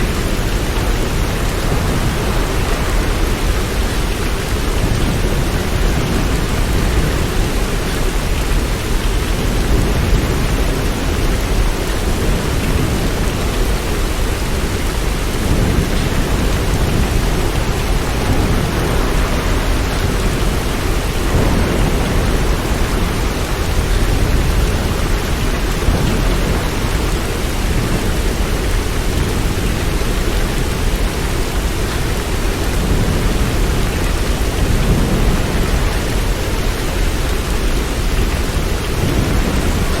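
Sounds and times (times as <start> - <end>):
heavy rain hiss: 0.0 - 40.0
deep rumble: 14.5 - 26.8.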